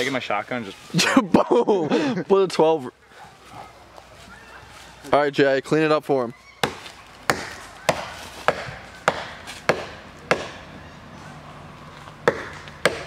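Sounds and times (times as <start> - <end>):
wood being chopped: 6.6 - 10.6, 12.2 - 13.0.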